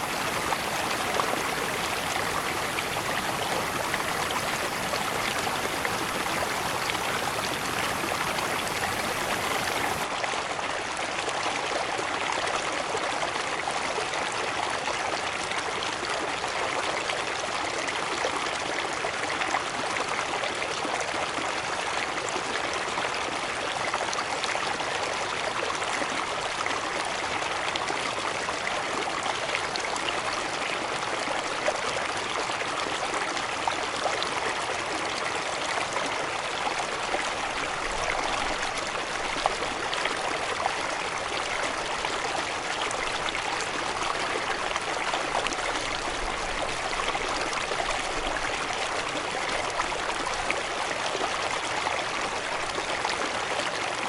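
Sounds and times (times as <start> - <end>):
waterfall rushing and splashing: 0.0 - 10.1.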